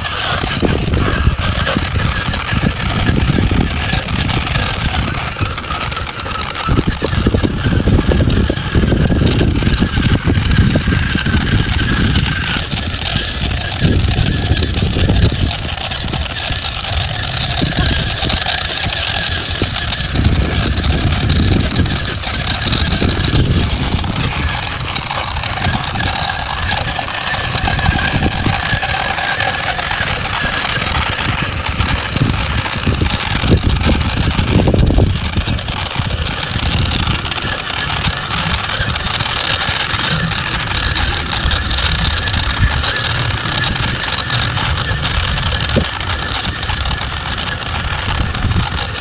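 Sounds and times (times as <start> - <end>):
model truck engine running: 0.0 - 49.0.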